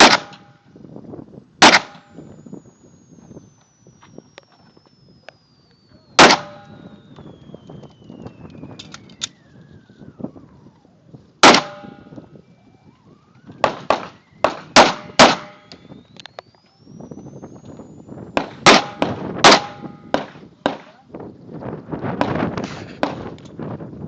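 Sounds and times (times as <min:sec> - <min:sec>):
pistol shots: 0:00.0 - 0:00.5, 0:01.6 - 0:02.1, 0:06.1 - 0:07.1, 0:11.4 - 0:12.1, 0:13.6 - 0:15.8, 0:18.4 - 0:21.0.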